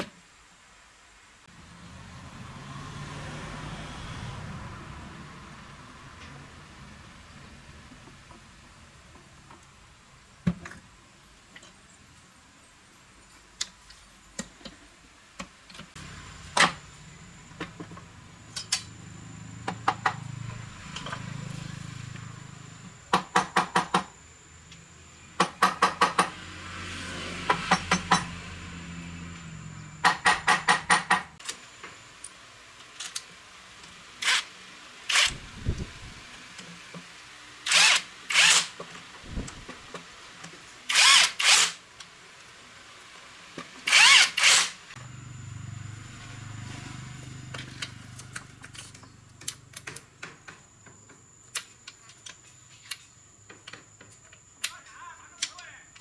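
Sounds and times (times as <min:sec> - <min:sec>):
low motor hum: 0:45.0 - 0:49.5.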